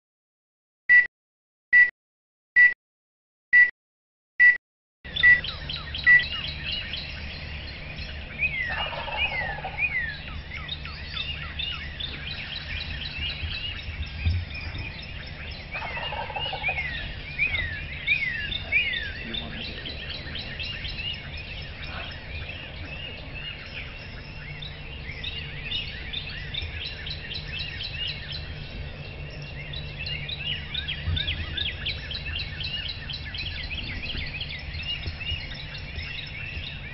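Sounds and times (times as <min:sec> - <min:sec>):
songbirds chirping: 0:04.4 - 0:36.9
turkey gobbling: 0:08.5 - 0:10.3, 0:15.7 - 0:20.9.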